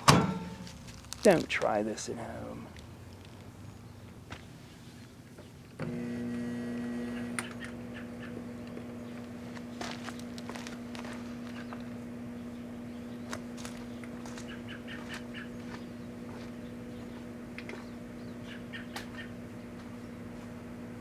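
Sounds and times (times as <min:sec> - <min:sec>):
sharp crackles: 0:00.6 - 0:01.8
microwave oven humming: 0:05.7 - 0:21.0.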